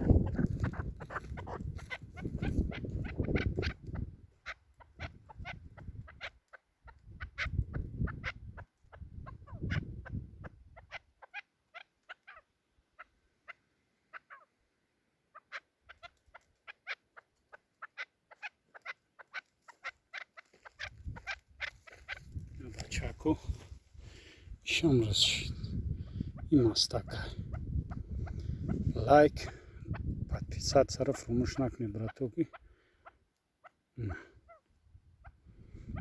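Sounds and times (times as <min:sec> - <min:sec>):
partridge calling: 0:00.0 - 0:36.0.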